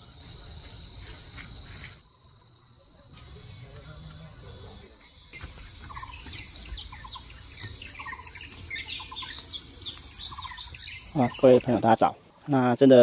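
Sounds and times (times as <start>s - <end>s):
high insect drone: 0.0s - 12.9s
birds chirping: 0.0s - 13.0s.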